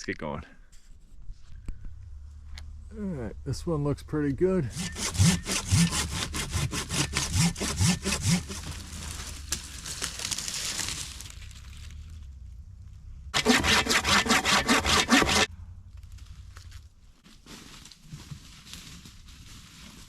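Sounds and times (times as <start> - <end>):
handsaw cutting wood: 4.7 - 9.2, 13.4 - 15.5.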